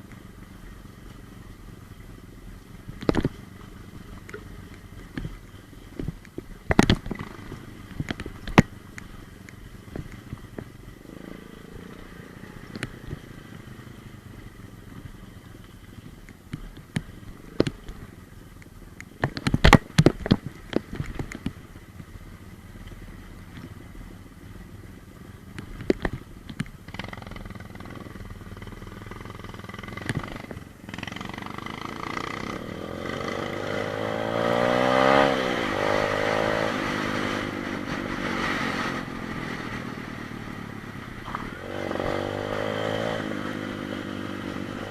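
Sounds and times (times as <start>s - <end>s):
pit bike engine revving: 11.0s - 14.0s, 26.9s - 44.9s.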